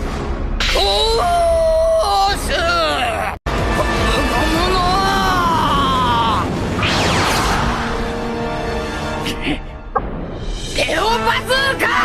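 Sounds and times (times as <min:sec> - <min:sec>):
falling whoosh: 0:06.8 - 0:08.3.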